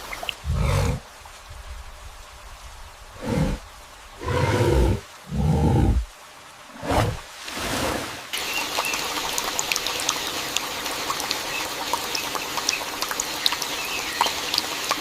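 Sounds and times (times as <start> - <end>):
steady rain falling: 0.0 - 15.0
sharp raindrop ticks: 8.4 - 15.0.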